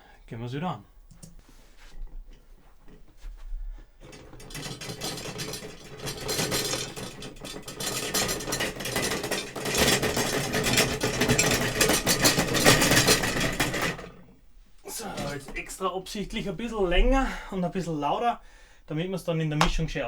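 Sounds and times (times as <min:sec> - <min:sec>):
fast rattling chug of props: 0:04.1 - 0:14.2.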